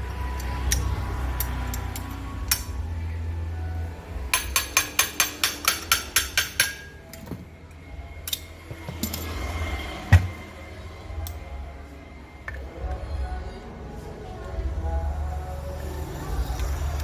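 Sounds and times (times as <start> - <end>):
hammer striking metal: 4.3 - 7.3, 10.1 - 10.5.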